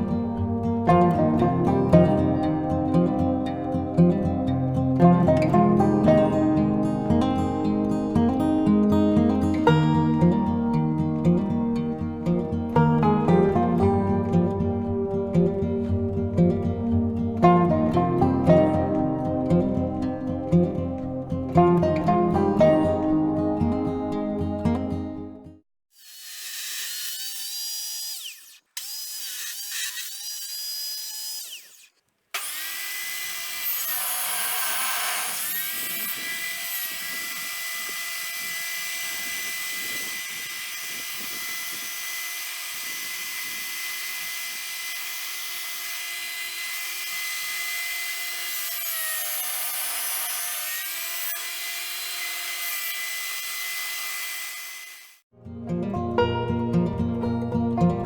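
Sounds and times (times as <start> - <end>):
table saw motor whining: 26.0 - 55.2.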